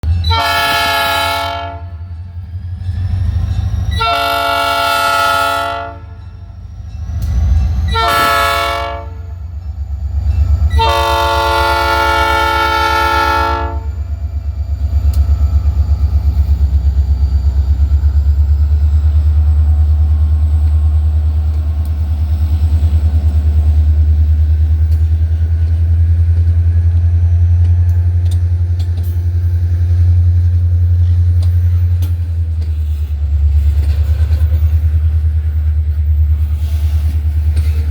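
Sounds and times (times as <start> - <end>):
locomotive engine rumbling: 0.0 - 37.9
locomotive horn blasts: 0.2 - 2.0, 3.9 - 6.2, 7.8 - 9.4, 10.7 - 14.0.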